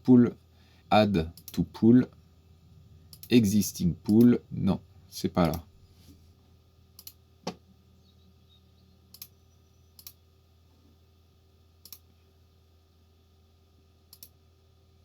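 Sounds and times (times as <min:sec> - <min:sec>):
faint low hum: 0:00.0 - 0:15.0
computer mouse clicking: 0:07.0 - 0:07.2, 0:09.1 - 0:09.3, 0:10.0 - 0:10.2, 0:11.8 - 0:12.1, 0:14.1 - 0:14.4.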